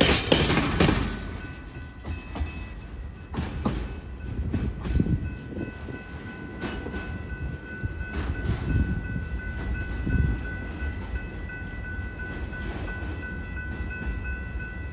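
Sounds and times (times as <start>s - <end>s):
train wheels knocking over rail joints: 0.0s - 5.2s
freight train rumble: 0.0s - 14.9s.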